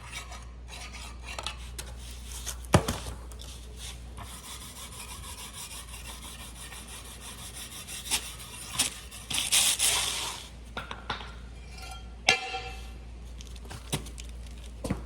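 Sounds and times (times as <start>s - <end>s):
scraping on metal: 0.0s - 14.3s
sharp metal clank: 11.7s - 13.0s.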